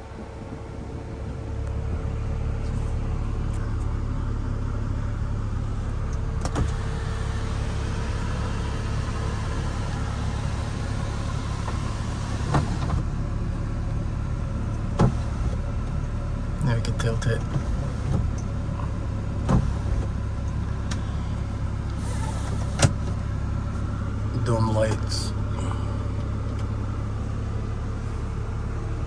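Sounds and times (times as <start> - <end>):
car low hum: 0.0 - 29.0
sunroof motor whirring: 6.3 - 13.1, 21.8 - 23.2
sunroof clicks: 6.4 - 13.0.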